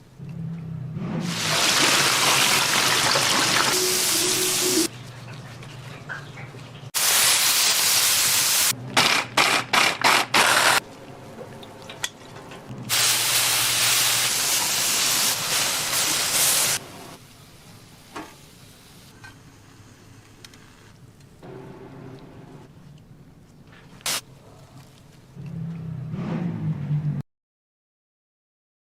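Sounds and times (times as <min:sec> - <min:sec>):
loud hissing noise: 0:07.0 - 0:08.8, 0:12.9 - 0:17.2.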